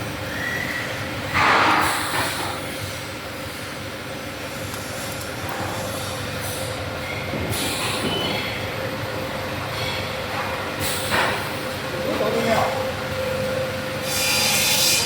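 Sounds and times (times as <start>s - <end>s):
workshop machinery rumble and hum: 0.0s - 15.0s.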